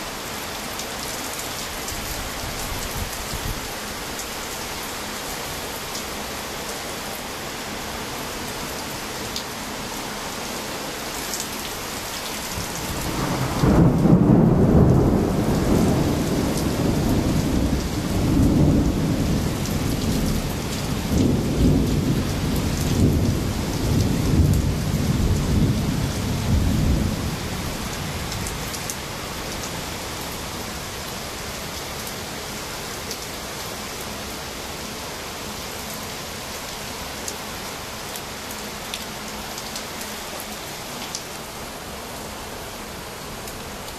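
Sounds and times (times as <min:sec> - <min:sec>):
steady rain: 0:00.0 - 0:43.9
thunder rumbling: 0:12.6 - 0:28.4.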